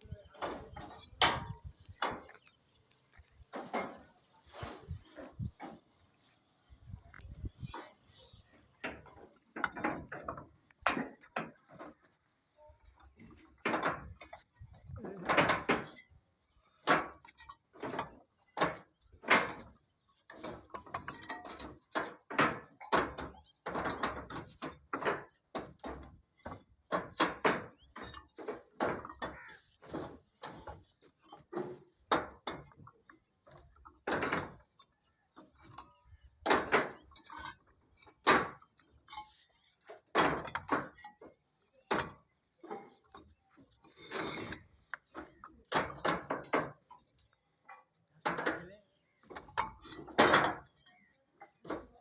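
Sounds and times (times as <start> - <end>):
irregular knocks and thuds: 0.1 - 2.5, 8.8 - 12.2, 16.8 - 35.8, 36.4 - 43.7.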